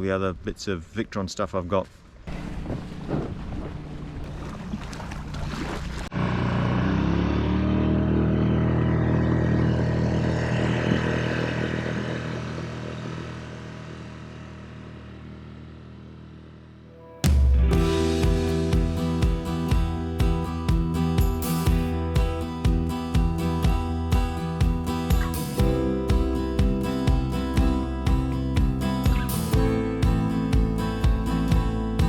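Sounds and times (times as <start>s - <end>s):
engine starting and running: 2.3s - 32.0s.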